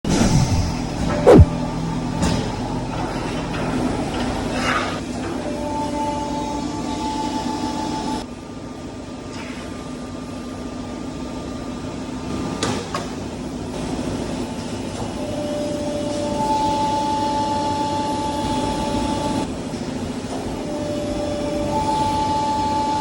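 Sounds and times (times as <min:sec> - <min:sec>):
constant machine hum: 0:00.1 - 0:07.2.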